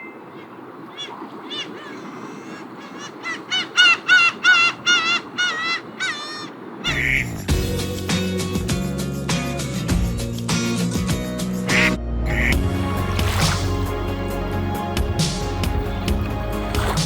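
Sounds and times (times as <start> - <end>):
gulls calling: 0.0 - 7.6, 11.7 - 14.1
music: 6.9 - 17.0.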